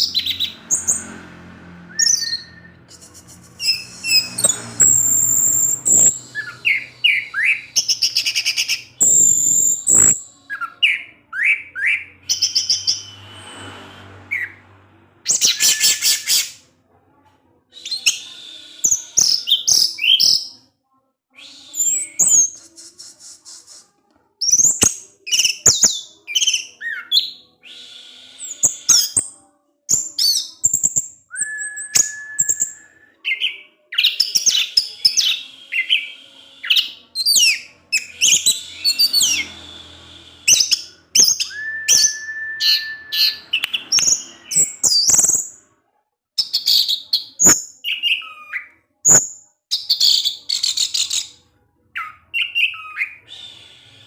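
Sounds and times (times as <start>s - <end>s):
bird chirping and twittering: 0.0s - 14.6s, 28.4s - 45.6s
long level bird whistles: 30.2s - 45.4s, 52.0s - 54.0s.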